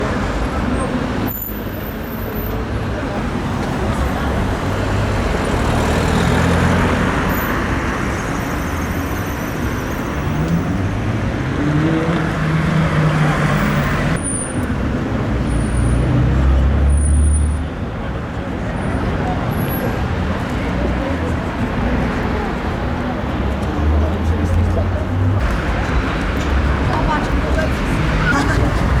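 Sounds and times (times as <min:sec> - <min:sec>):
tram running gear rumble: 0:18.0 - 0:29.0.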